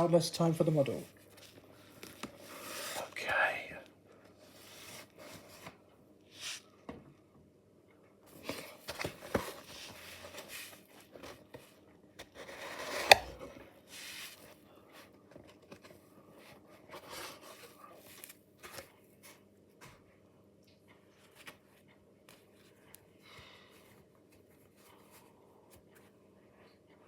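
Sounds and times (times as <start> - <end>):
cardboard box handled: 8.3 - 13.4.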